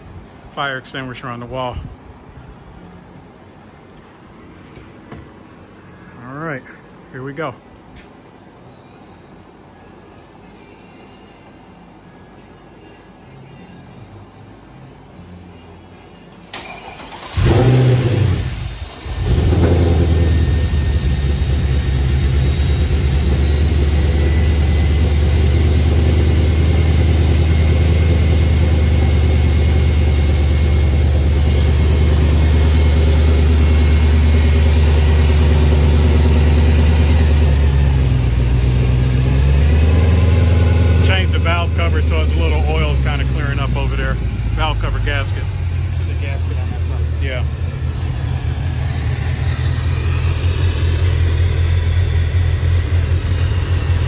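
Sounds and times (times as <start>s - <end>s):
car engine cranking and idling: 16.4s - 54.0s.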